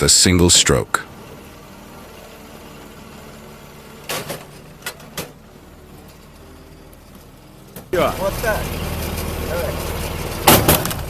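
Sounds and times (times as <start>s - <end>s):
log splitter engine running: 0.0s - 11.0s
sharp knocks: 10.4s - 11.0s.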